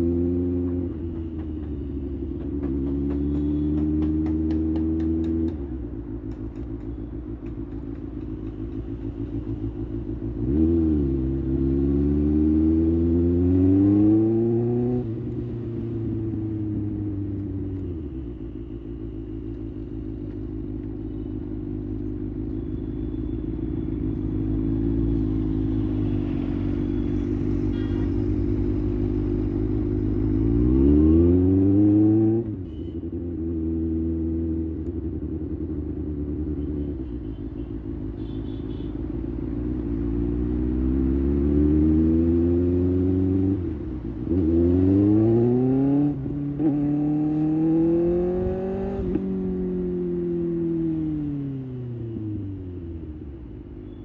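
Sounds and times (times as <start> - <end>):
motorcycle engine revving: 8.2 - 18.4, 23.4 - 38.3, 39.5 - 53.3.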